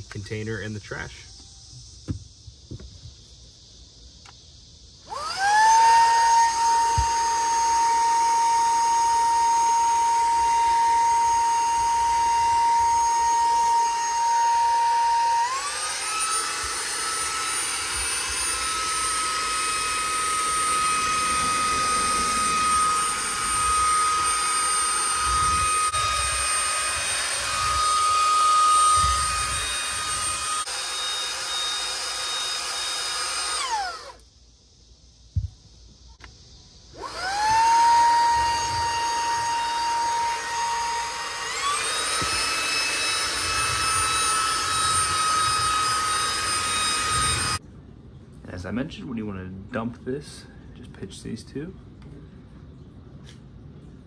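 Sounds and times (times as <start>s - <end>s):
handheld vacuum motor whine: 5.0s - 34.3s, 36.9s - 47.6s.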